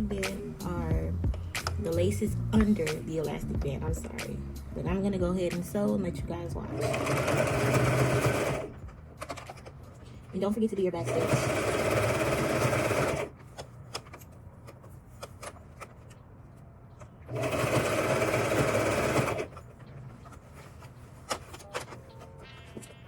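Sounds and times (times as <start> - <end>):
sewing machine stitching: 6.7 - 9.4, 11.0 - 13.3, 17.3 - 19.6.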